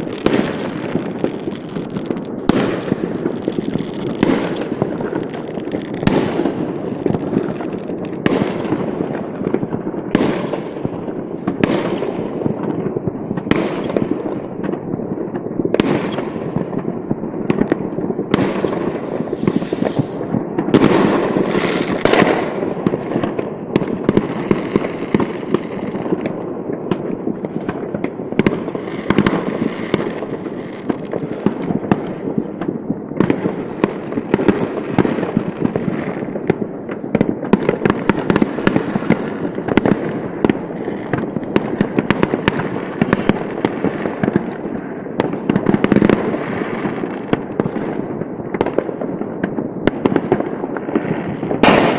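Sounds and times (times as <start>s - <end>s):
fireworks crackling and popping: 0.0s - 51.9s
fireworks sharp bangs: 0.0s - 51.9s.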